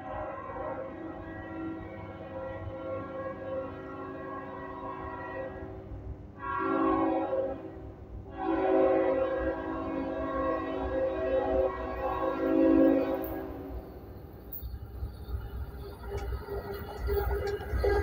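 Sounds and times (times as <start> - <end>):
train horn blasts: 0.0 - 14.0.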